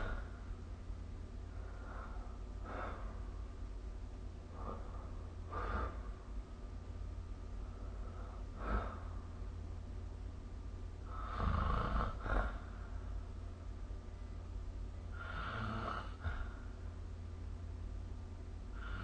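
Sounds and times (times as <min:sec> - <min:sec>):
steady low hum: 0:00.0 - 0:19.0
person snoring: 0:11.1 - 0:12.7, 0:15.1 - 0:16.5, 0:18.7 - 0:19.0.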